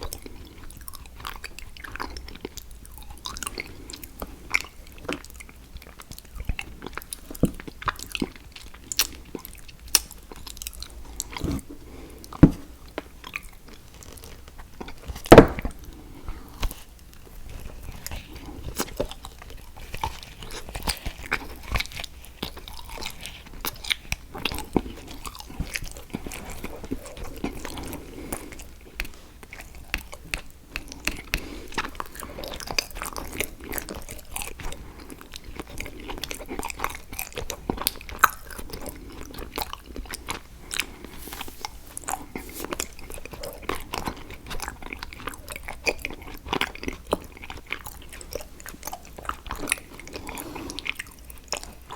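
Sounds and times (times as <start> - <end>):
chocolate crunching: 0.0 - 51.9.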